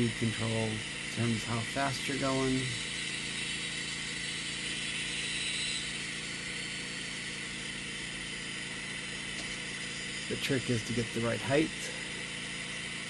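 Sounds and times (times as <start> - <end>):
sawmill engine revving: 0.0 - 13.0.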